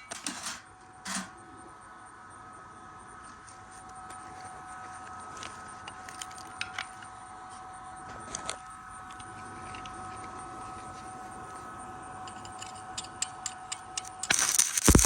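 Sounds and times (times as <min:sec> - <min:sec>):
electrical whine: 0:00.0 - 0:15.0
welding arc crackling: 0:12.2 - 0:15.0
sharp welding pops: 0:13.2 - 0:15.0.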